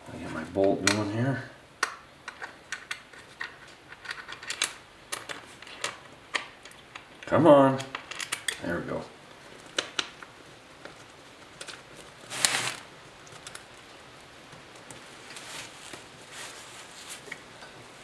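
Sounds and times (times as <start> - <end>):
short scraping rustle: 12.2 - 12.9, 15.2 - 17.3.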